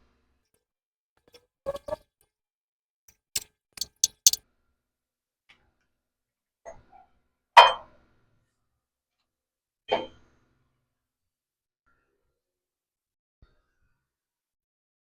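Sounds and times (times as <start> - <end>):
small metal hardware clinking: 3.2 - 4.4.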